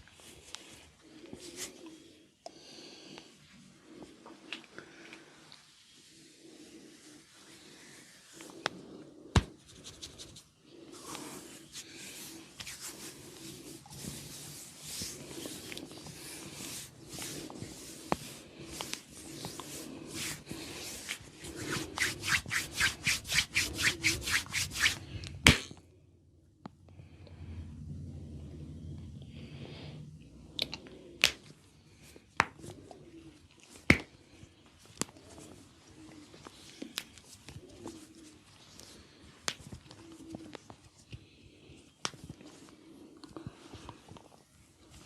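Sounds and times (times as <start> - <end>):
hands rubbing through hair: 6.5 - 25.1.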